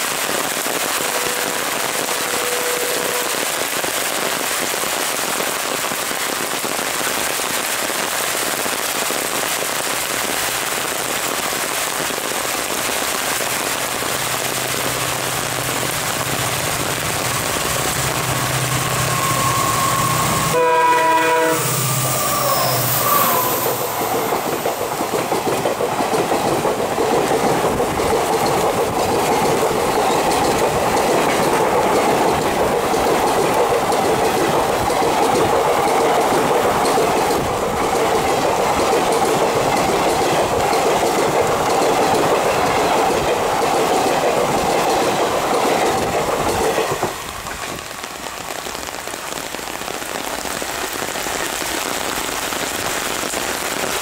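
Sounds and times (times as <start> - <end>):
heavy rain hissing: 0.0 - 43.6, 46.3 - 54.0
train wheels clattering over rail joints: 23.4 - 47.8.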